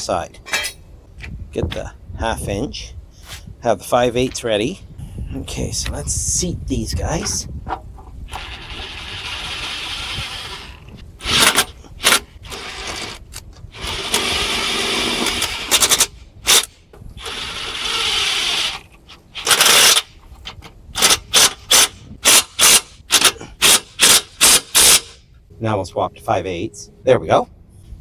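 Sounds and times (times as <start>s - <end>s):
ratchet wrench clicking: 19.4s - 20.1s, 21.0s - 25.2s.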